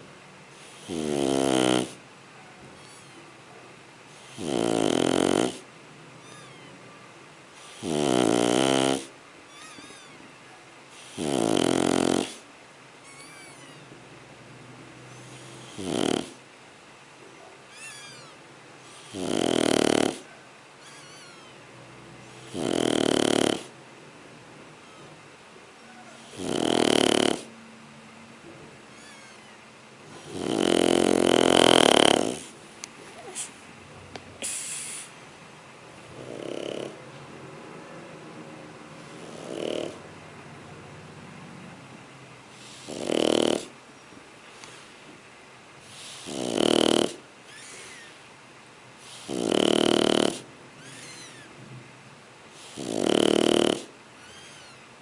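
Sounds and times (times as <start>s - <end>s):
puppy snoring: 0.5s - 2.1s, 4.1s - 6.7s, 7.5s - 10.2s, 10.9s - 13.9s, 15.0s - 16.5s, 17.7s - 21.6s, 22.2s - 23.8s, 25.9s - 27.6s, 28.9s - 32.6s, 34.4s - 35.1s, 36.0s - 37.1s, 39.0s - 40.1s, 42.5s - 43.8s, 45.8s - 48.2s, 49.0s - 51.5s, 52.5s - 54.8s.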